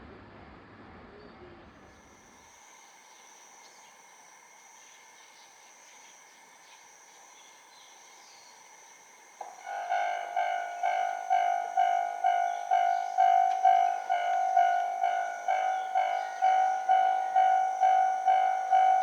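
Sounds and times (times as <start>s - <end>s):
insect trill: 3.0s - 19.0s
railroad crossing warning bell: 8.7s - 19.0s.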